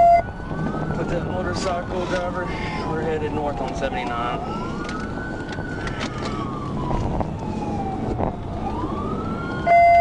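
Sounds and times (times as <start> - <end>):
loud steady beep: 0.0 - 0.3
police siren wailing: 0.0 - 10.0
road noise: 0.0 - 10.0.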